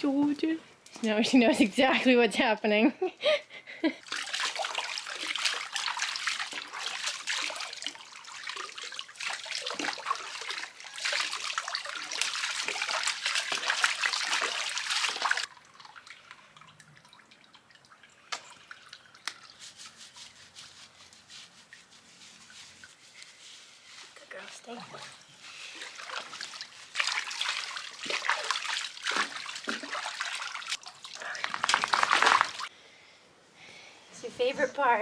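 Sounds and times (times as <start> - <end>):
water dripping: 3.9 - 23.3, 24.3 - 32.7
water running and splashing: 4.0 - 32.7.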